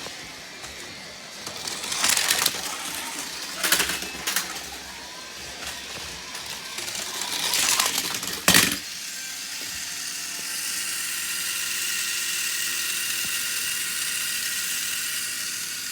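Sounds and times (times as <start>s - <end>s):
rattle: 0.0s - 8.9s
small motor whirring: 0.0s - 15.9s.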